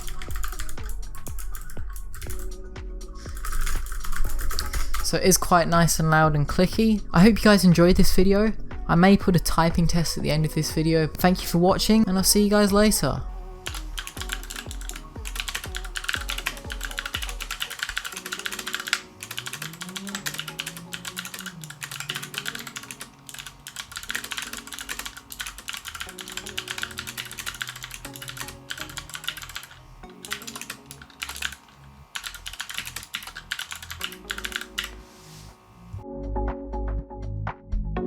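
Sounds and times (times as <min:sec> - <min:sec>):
clicky mechanical keyboard typing: 0:00.0 - 0:02.6, 0:03.3 - 0:05.2, 0:13.6 - 0:35.0
background music: 0:00.0 - 0:38.0.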